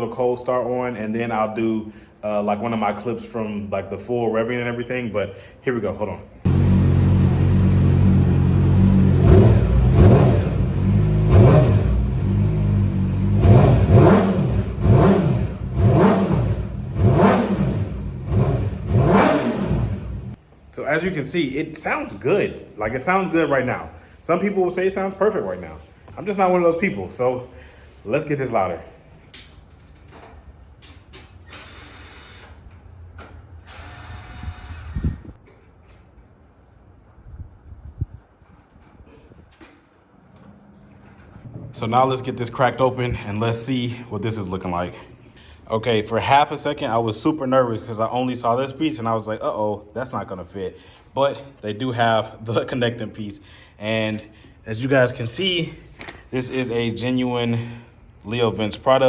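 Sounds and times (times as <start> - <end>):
motorcycle engine idling: 6.5 - 20.4
motorcycle engine revving: 6.5 - 20.4
rustling or scraping: 35.3 - 41.7.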